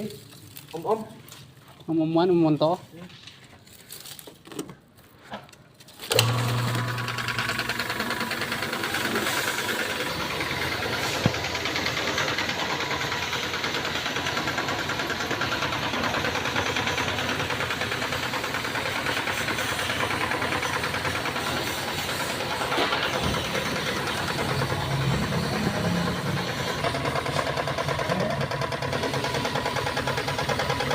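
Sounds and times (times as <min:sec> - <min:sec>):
pressure washer pulsing hiss: 0:07.6 - 0:27.6.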